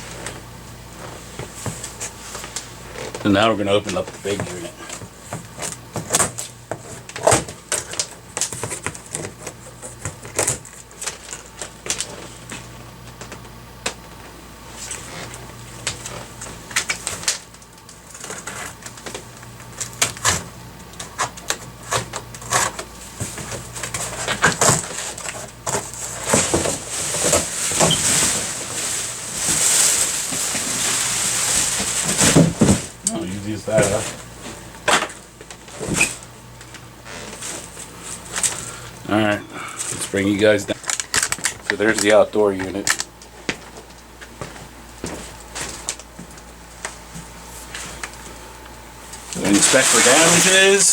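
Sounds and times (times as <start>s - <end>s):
cardboard rustling: 21.9s - 36.3s, 49.1s - 50.9s.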